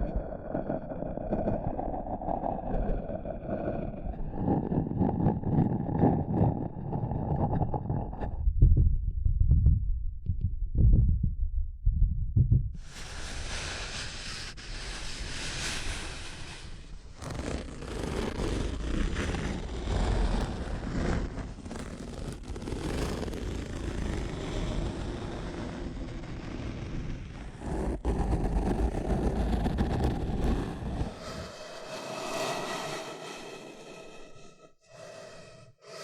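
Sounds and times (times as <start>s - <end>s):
soft low thumps: 7.4s - 12.9s
scratchy rushing noise: 12.8s - 36.0s.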